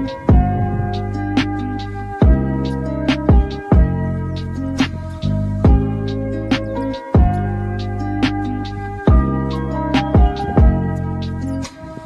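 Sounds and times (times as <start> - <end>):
electronic chords with bass: 0.0 - 11.7
drum hits: 0.3 - 2.5.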